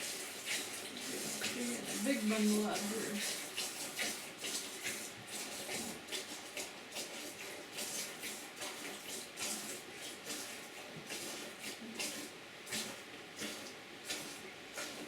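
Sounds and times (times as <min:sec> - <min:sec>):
milk squirting into a pail: 0:00.0 - 0:07.1.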